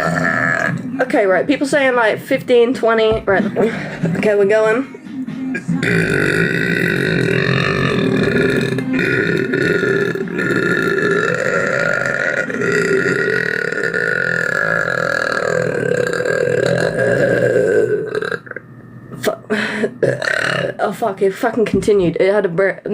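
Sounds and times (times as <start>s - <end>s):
long loud burp: 0.0s - 0.8s, 5.8s - 18.6s, 20.0s - 20.8s.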